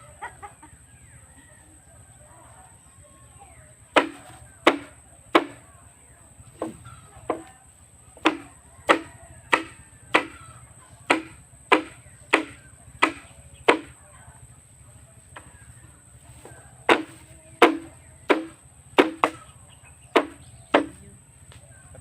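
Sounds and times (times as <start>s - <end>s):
blade chopping strokes: 8.2s - 10.4s, 11.1s - 14.0s, 16.9s - 19.4s.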